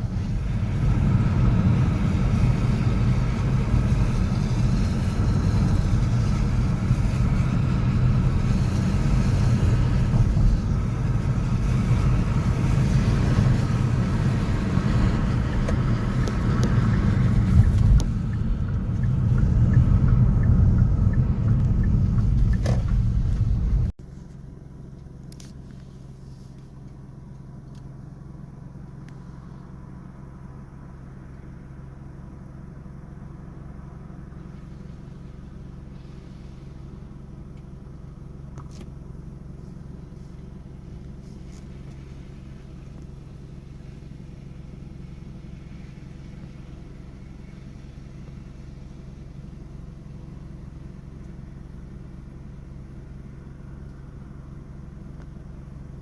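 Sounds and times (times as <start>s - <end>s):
passing cars rumbling: 0.0s - 24.0s
low hum: 0.0s - 56.0s.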